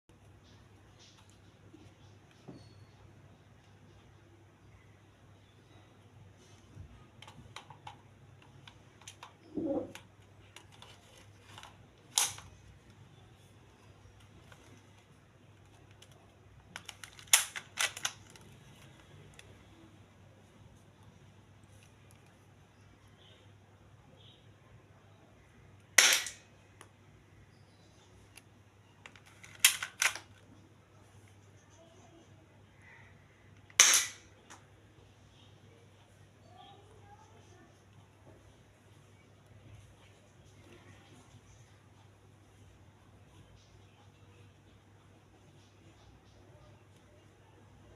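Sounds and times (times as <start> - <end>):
toy pistol clicking: 26.0 - 26.4, 33.7 - 34.2.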